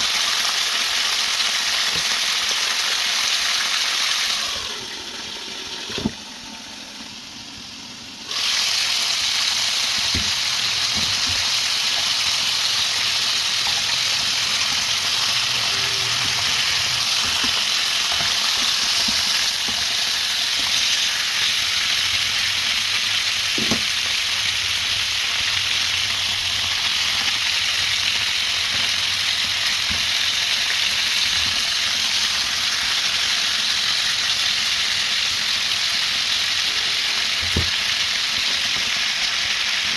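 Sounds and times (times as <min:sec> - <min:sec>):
food sizzling in a pan: 0:00.0 - 0:39.9
utensil knocking: 0:23.6 - 0:24.0.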